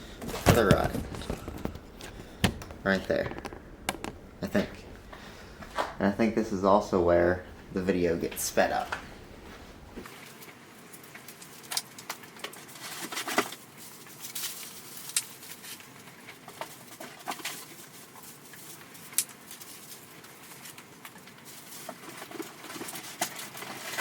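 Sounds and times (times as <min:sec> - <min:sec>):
parts and boxes handled: 0:00.0 - 0:10.1.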